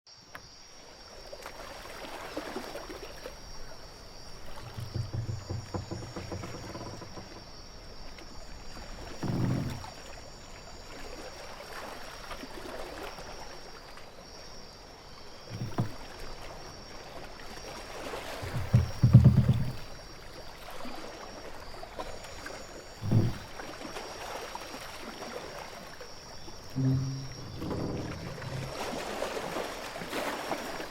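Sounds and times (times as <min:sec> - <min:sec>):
low creaks or thumps: 0:04.4 - 0:07.6, 0:09.2 - 0:10.0, 0:15.5 - 0:16.1, 0:18.4 - 0:19.9, 0:23.0 - 0:23.6, 0:26.6 - 0:29.2
lapping sea water: 0:15.5 - 0:30.9.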